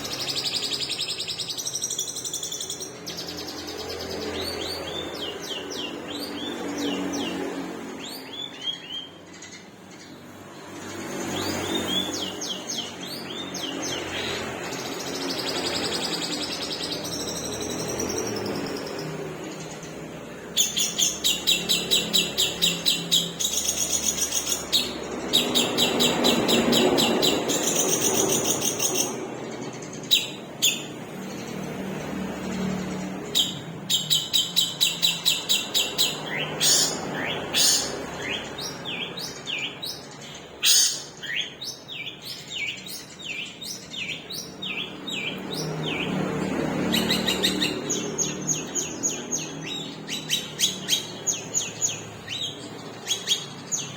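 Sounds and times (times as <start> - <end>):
bird singing rapid high notes: 20.4 - 31.4, 33.1 - 53.9.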